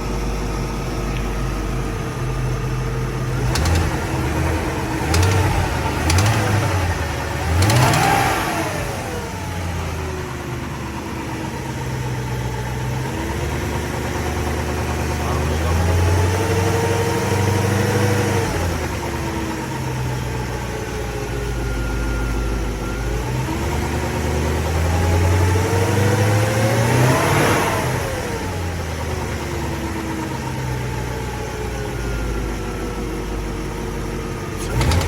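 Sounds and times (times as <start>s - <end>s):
car engine revving: 1.7s - 19.8s, 23.2s - 30.4s, 34.5s - 35.0s.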